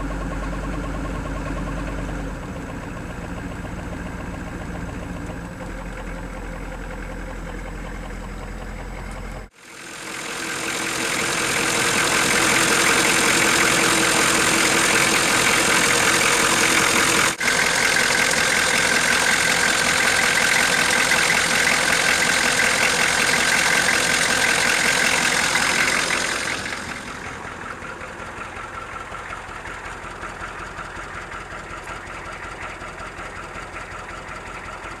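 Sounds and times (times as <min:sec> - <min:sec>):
diesel engine knocking: 0:00.0 - 0:35.0.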